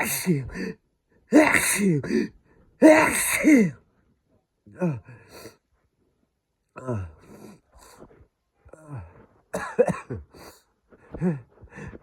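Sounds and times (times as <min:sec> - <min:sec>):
person sneezing: 0:00.0 - 0:00.4, 0:01.4 - 0:02.2, 0:02.8 - 0:03.7.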